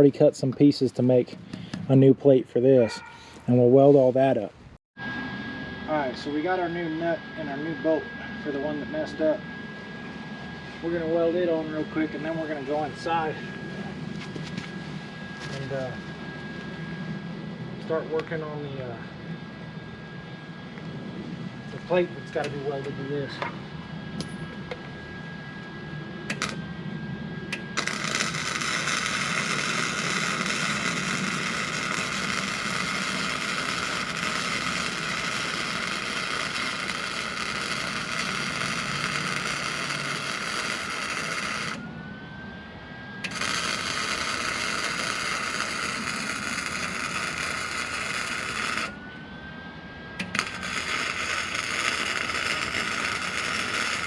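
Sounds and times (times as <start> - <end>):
faint whine: 0.0 - 54.0
welding arc crackling hiss: 26.3 - 26.6, 27.8 - 41.8, 43.3 - 48.9, 50.2 - 54.0.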